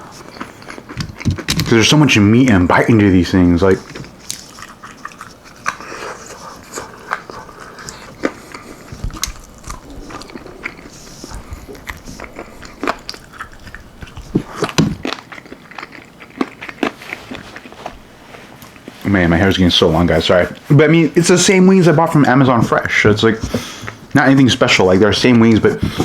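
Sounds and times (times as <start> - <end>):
crunchy chicken wings chewing: 0.0 - 19.0.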